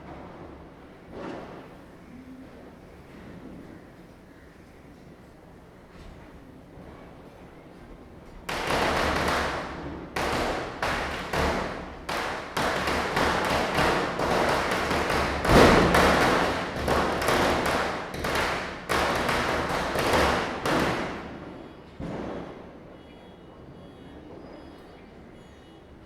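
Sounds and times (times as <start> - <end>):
firecrackers bursting: 8.5 - 22.6.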